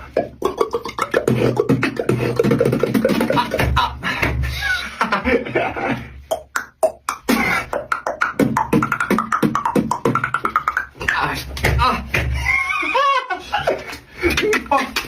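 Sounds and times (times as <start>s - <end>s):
person beatboxing: 0.0s - 4.6s, 6.2s - 12.4s.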